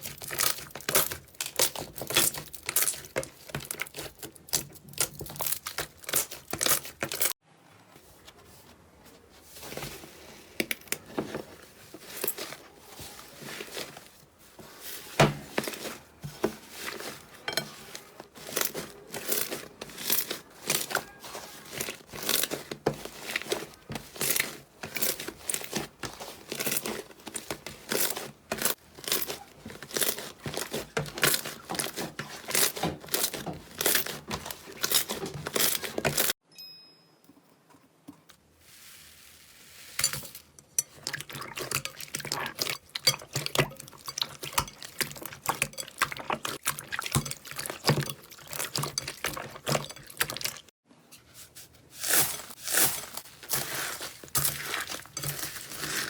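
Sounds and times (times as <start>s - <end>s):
slime crackling and popping: 0.0s - 7.3s.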